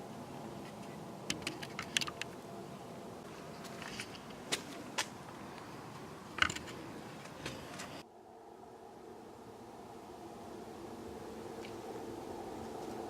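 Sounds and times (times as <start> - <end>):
steady drone with faint hum: 0.0 - 13.0
scattered clicks: 0.8 - 2.4.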